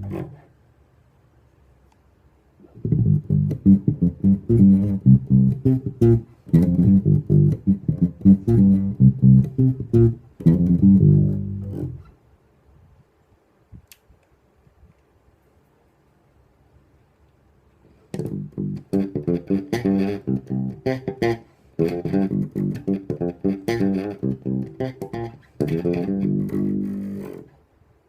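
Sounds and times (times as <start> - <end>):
electric bass guitar notes: 0.0 - 0.4, 2.6 - 12.1, 18.1 - 27.5
faint click: 1.4 - 2.1, 13.7 - 15.8.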